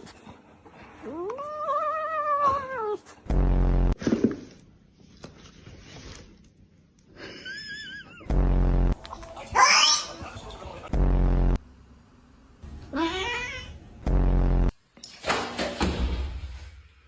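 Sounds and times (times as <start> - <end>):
loud buzz: 3.3 - 4.0, 8.3 - 9.0, 10.9 - 11.7, 14.0 - 14.7
cat meowing: 12.9 - 13.8
cat wavering cry: 12.9 - 13.8.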